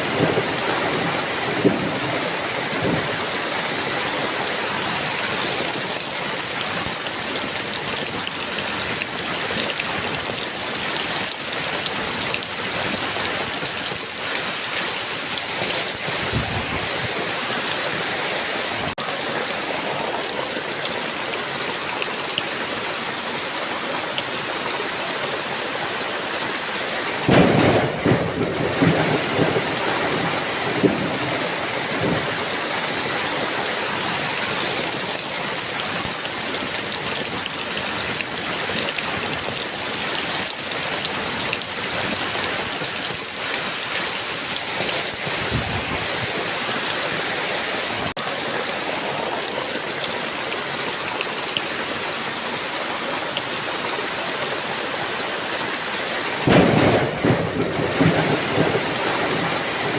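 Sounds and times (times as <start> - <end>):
thunderclap rumbling: 0.0 - 3.2, 27.2 - 32.5, 56.4 - 59.9
heavy rain falling: 0.0 - 59.9.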